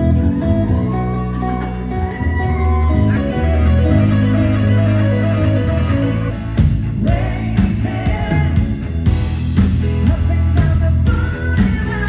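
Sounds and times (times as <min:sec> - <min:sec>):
bass guitar: 0:00.0 - 0:12.0
electric guitar: 0:00.0 - 0:12.0
steady drum beat: 0:05.4 - 0:12.0
person singing: 0:06.2 - 0:08.9, 0:09.9 - 0:12.0.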